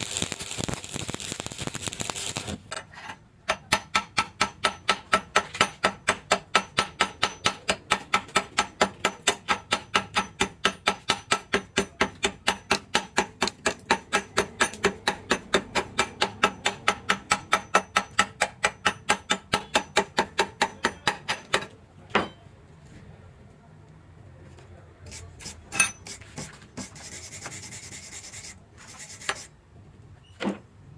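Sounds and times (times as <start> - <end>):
scraping strokes on metal: 0.0 - 3.2, 25.0 - 29.5.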